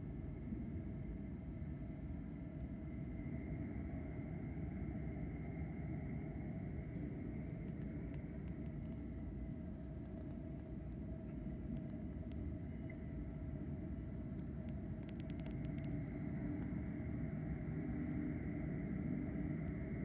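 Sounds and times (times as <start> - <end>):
distant traffic and machinery rumble: 0.0 - 20.0
faint hum: 0.0 - 20.0
faint ticks: 7.5 - 10.7, 11.7 - 12.5, 14.3 - 16.0.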